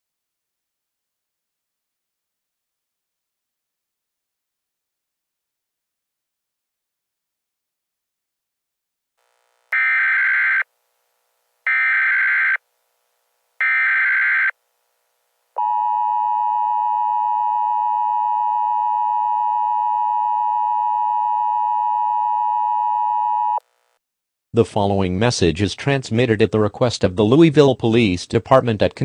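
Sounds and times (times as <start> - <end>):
screeching digital data tones: 9.8 - 10.6.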